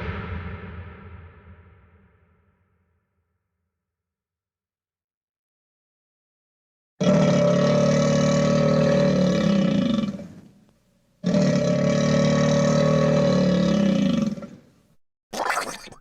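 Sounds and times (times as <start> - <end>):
cartoon low growl: 7.0 - 10.2, 11.2 - 14.6, 15.4 - 16.0.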